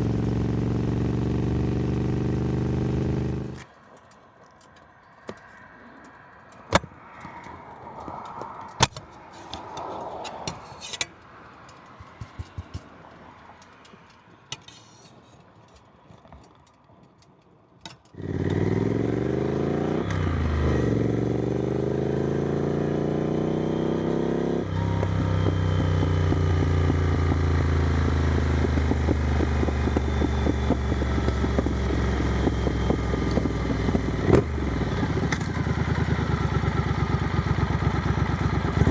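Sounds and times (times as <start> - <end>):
motorcycle engine revving: 0.0 - 3.6, 18.2 - 38.9
scattered clicks and knocks: 3.6 - 18.2.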